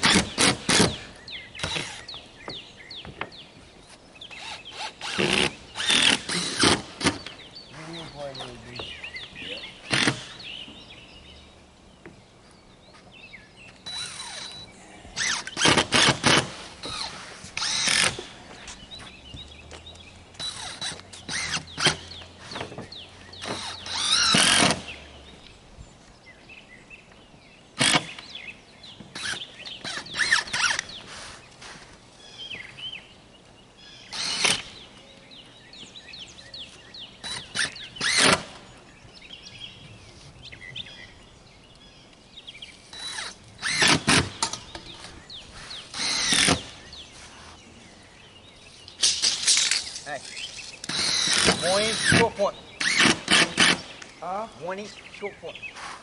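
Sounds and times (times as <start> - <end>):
birds chirping: 0.0 - 56.0
power tool burst: 50.8 - 53.9.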